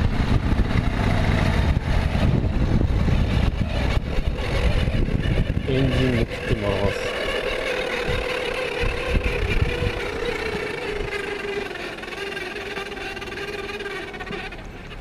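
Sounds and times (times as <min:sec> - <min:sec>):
motorcycle engine running: 0:00.0 - 0:15.0
steady engine whine: 0:00.0 - 0:15.0.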